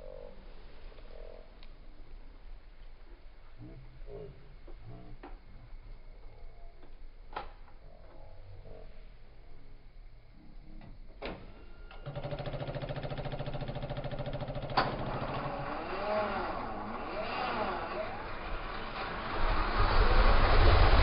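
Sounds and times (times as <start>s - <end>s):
click: 1.0s - 1.8s
off-road vehicle engine revving: 12.4s - 21.0s.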